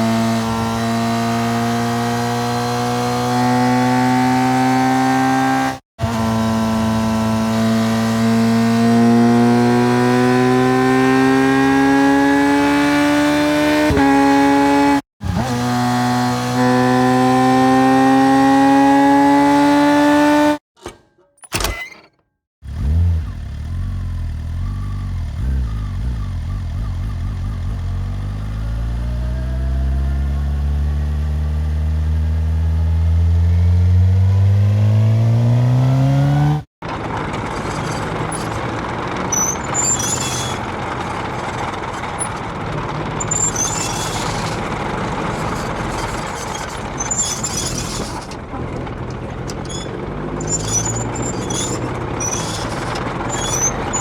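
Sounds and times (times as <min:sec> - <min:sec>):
motorcycle engine rising in pitch: 0:00.1 - 0:20.6, 0:22.7 - 0:36.7
faint high squeaks: 0:20.8 - 0:22.2, 0:37.4 - 0:42.6, 0:43.2 - 0:48.6, 0:49.3 - 0:54.0
rough motorcycle engine running: 0:22.6 - 0:28.5, 0:36.3 - 0:54.0.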